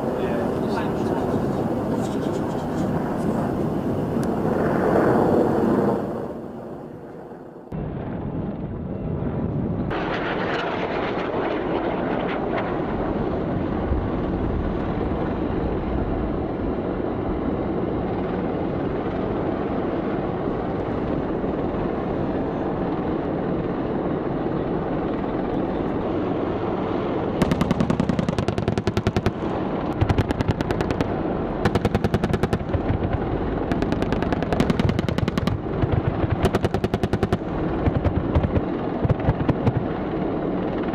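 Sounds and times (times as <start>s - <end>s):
helicopter rotor and engine: 0.0s - 40.9s
automatic gunfire bursts: 27.4s - 39.9s.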